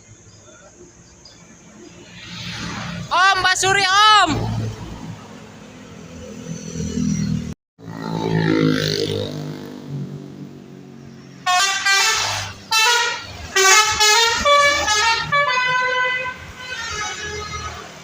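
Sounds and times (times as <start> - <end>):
bus engine hum: 0.0 - 8.1, 9.9 - 18.0
multi-note bus air horn: 11.4 - 18.0.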